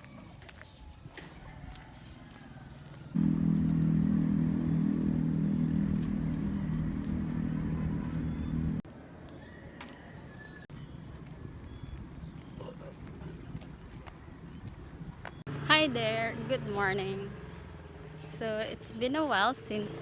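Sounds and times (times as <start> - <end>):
motor vehicle engine humming: 3.1 - 8.9.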